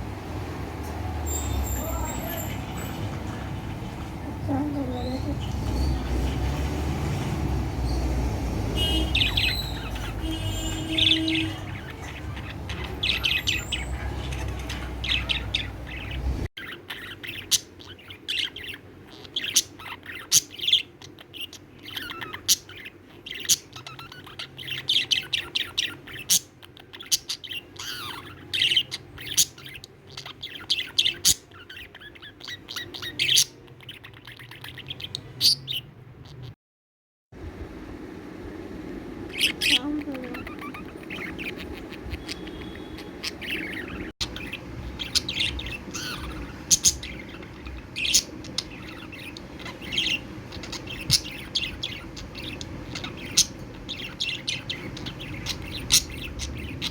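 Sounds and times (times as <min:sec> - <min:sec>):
budgerigar chirping and chattering: 0:01.3 - 0:06.6, 0:08.7 - 0:36.6, 0:39.3 - 0:56.9.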